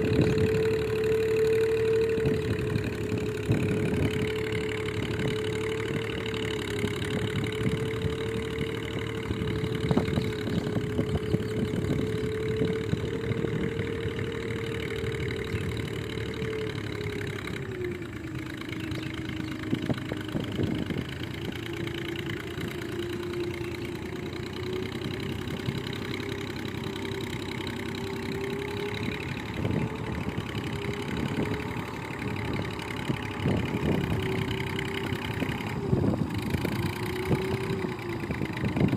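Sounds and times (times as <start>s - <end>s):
constant clatter: 0.0s - 38.9s
tractor engine running: 0.0s - 38.9s.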